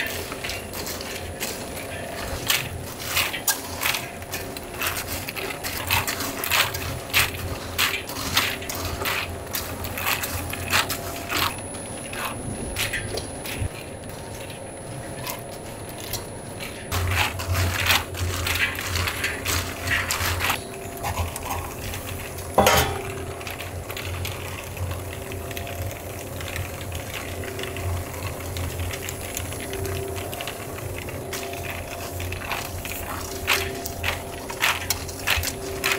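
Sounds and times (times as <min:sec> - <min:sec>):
machinery humming: 0:00.0 - 0:35.9.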